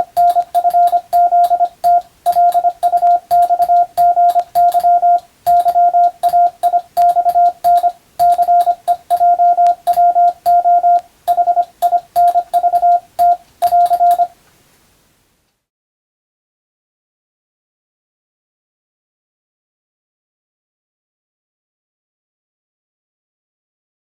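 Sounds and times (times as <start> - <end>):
key clicks: 0.0 - 14.3
morse code tone: 0.0 - 14.4.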